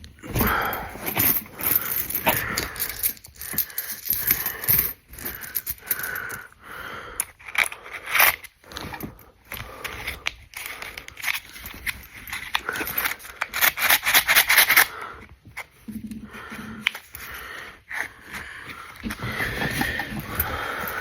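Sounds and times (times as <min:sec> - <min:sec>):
rustling: 0:00.2 - 0:06.4, 0:17.9 - 0:21.0
coins clinking and scraping: 0:00.4 - 0:06.4, 0:07.4 - 0:14.9, 0:19.0 - 0:21.0.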